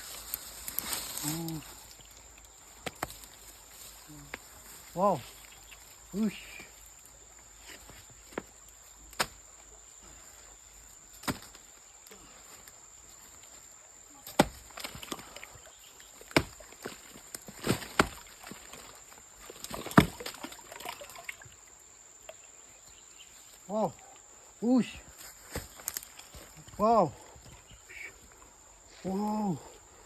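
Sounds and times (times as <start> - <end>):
stones and water knocking and splashing: 2.7 - 3.4, 14.2 - 15.6, 16.2 - 21.5.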